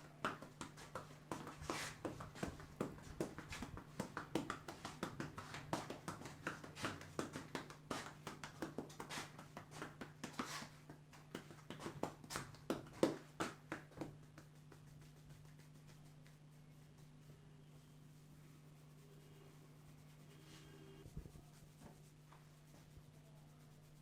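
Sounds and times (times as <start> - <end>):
hands tapping and patting head: 0.0 - 16.5
hands rubbing through hair: 0.0 - 17.2.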